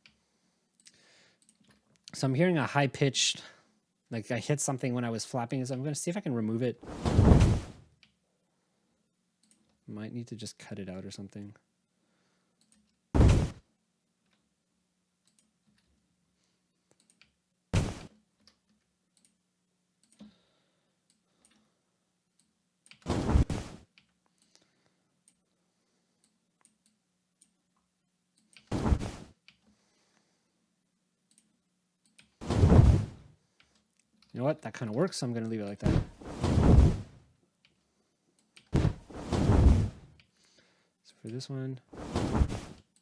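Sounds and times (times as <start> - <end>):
computer mouse clicks: 0.8 - 1.8, 9.4 - 9.8, 15.2 - 15.5, 16.9 - 17.4, 18.4 - 19.4, 20.0 - 20.4, 31.3 - 32.3
heavy wing flap: 6.8 - 7.8, 13.2 - 13.6, 17.8 - 18.1, 23.1 - 23.8, 28.7 - 29.3, 32.4 - 33.3, 35.8 - 37.2, 38.8 - 40.1, 42.0 - 42.8.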